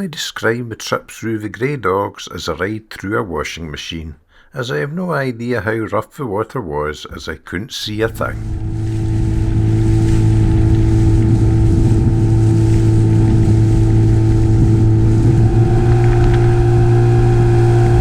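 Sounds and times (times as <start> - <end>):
outboard motor running: 8.2 - 18.0.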